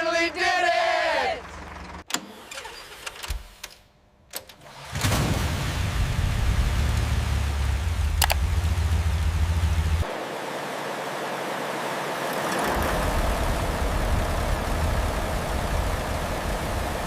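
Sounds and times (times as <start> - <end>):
tank engine rumbling: 0.8 - 2.1, 5.9 - 17.0.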